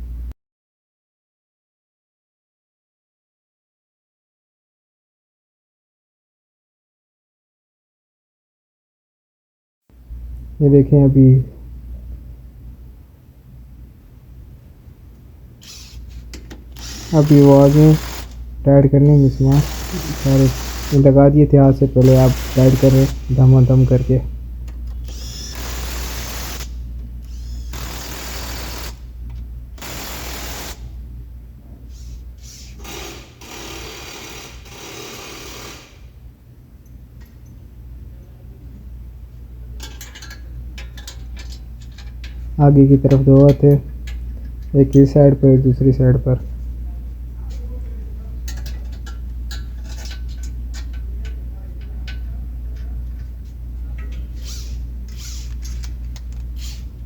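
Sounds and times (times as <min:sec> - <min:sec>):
steady low hum: 0:00.0 - 0:00.4, 0:10.0 - 0:57.0
impact wrench hammering: 0:15.8 - 0:18.4, 0:19.0 - 0:21.2, 0:22.0 - 0:24.1, 0:25.1 - 0:26.7, 0:27.3 - 0:29.0, 0:29.8 - 0:30.9, 0:32.8 - 0:36.1
low hum: 0:16.6 - 0:30.2
hand tools clicking on metal: 0:39.8 - 0:42.4, 0:48.5 - 0:53.3.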